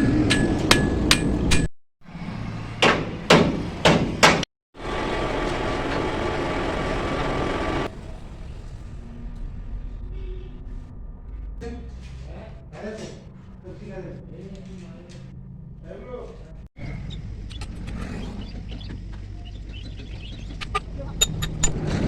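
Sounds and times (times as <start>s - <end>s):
workshop noise: 2.8s - 8.3s
machine hum with thin whine: 4.8s - 8.4s.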